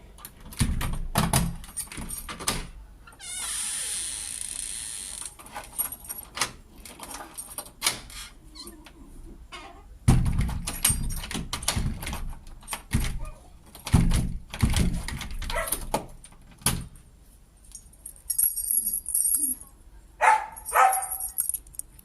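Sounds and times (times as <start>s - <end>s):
keys jingling: 5.5s - 7.7s, 10.6s - 12.9s, 17.7s - 22.0s
dog barking: 15.5s - 15.8s, 20.2s - 21.2s.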